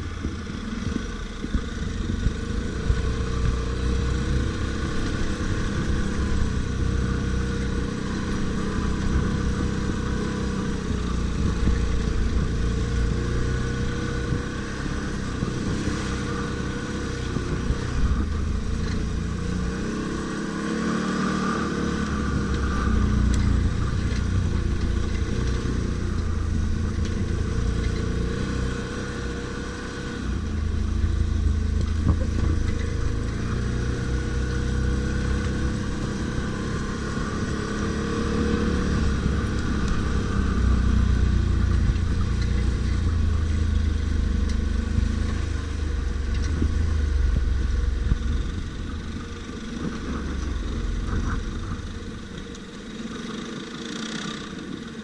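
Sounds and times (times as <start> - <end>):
atv engine running: 0.0 - 55.0.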